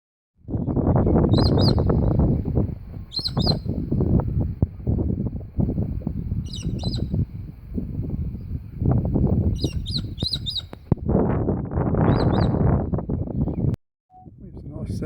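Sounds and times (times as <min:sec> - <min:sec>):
finches chirping: 0:01.1 - 0:02.4, 0:03.1 - 0:03.8, 0:06.4 - 0:07.2, 0:09.5 - 0:10.8.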